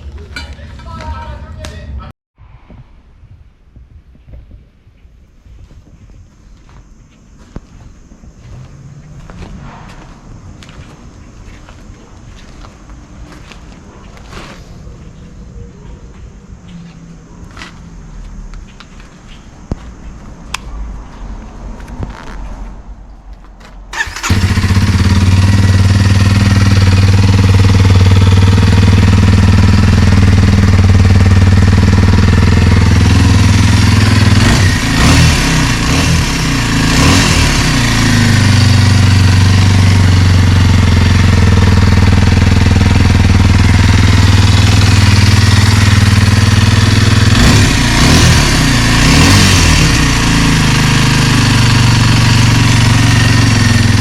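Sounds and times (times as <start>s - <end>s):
motorcycle engine idling: 23.9s - 54.0s.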